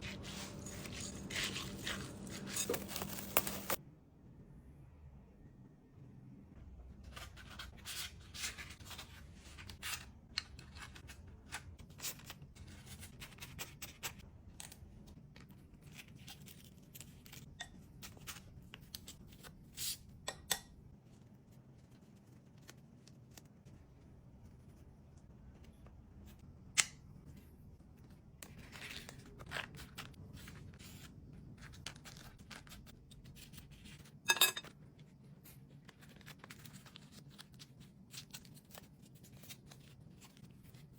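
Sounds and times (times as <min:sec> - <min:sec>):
rustling: 0:00.0 - 0:03.8
snipping or tearing: 0:00.2 - 0:03.8.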